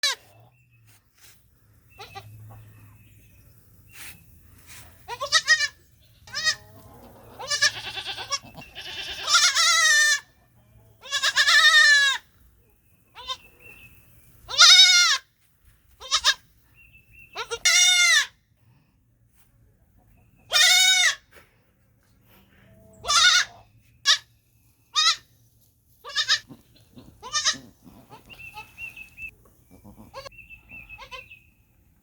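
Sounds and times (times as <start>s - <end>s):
baby goat bleating: 0.0s - 0.3s, 5.1s - 10.3s, 11.0s - 12.3s, 13.2s - 13.5s, 14.5s - 15.3s, 16.0s - 16.4s, 17.4s - 18.4s, 20.5s - 21.2s, 23.0s - 24.2s, 24.9s - 25.3s, 26.0s - 28.9s, 29.7s - 31.4s.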